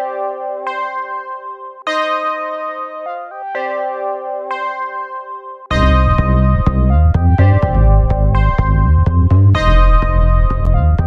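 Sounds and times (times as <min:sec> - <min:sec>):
electronic instrumental music: 0:00.0 - 0:11.0.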